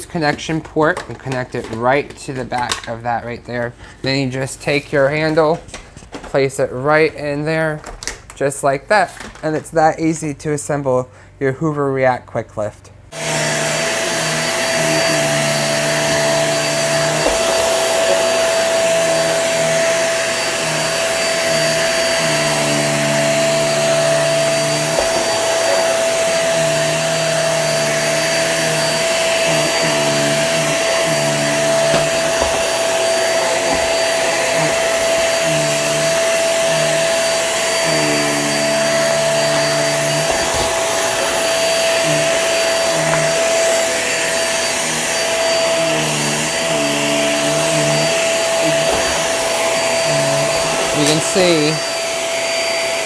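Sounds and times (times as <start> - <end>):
vacuum motor whine: 13.1 - 53.0.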